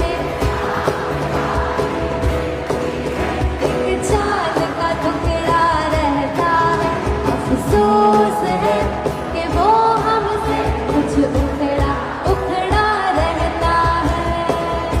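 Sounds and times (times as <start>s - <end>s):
person singing: 3.7s - 15.0s.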